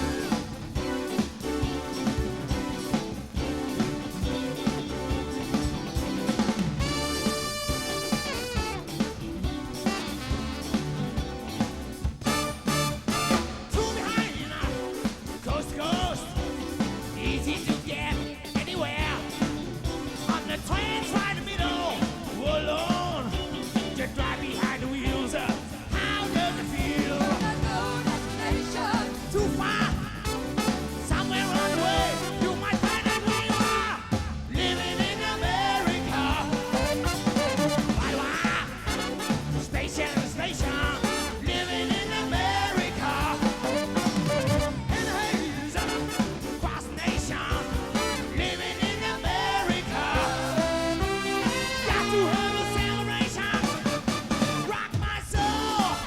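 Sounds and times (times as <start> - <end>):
person singing: 0.0 - 0.5, 13.7 - 19.5, 20.2 - 54.0, 54.6 - 56.0
soul band playing: 0.0 - 56.0
steady drum beat: 0.0 - 56.0.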